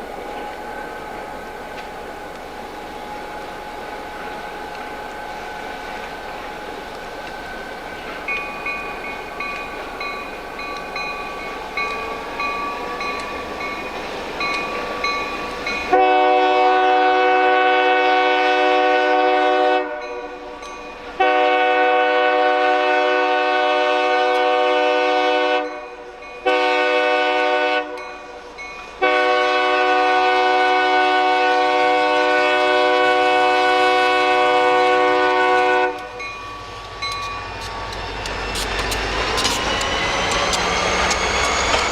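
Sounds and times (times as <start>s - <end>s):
approaching train: 0.0s - 41.9s
locomotive air horn blasts: 15.9s - 20.6s, 21.2s - 28.4s, 29.0s - 36.2s.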